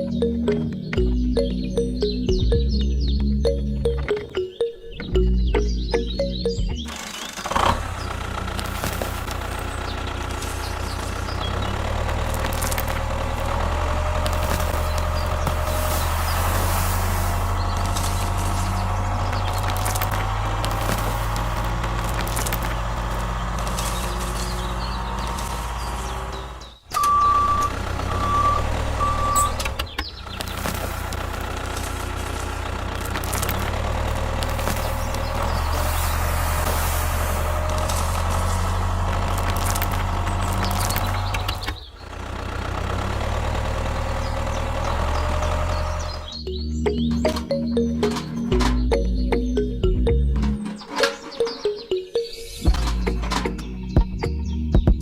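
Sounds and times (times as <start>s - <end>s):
small engine running: 6.8s - 46.4s
reversing alarm beeping: 26.9s - 29.8s.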